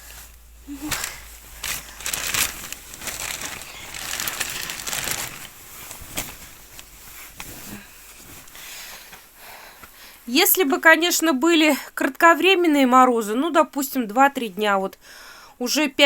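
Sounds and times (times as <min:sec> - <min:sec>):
crinkly material rustling: 0:00.0 - 0:09.2.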